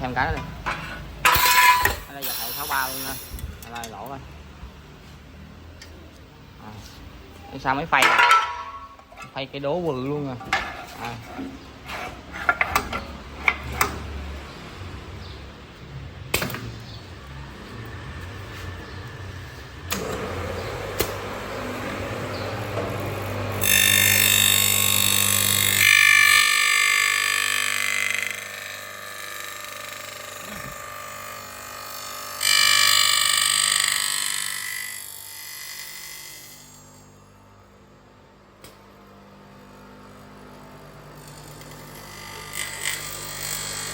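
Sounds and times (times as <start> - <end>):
low machine hum: 0.0 - 28.8
router spindle whining: 17.2 - 31.8.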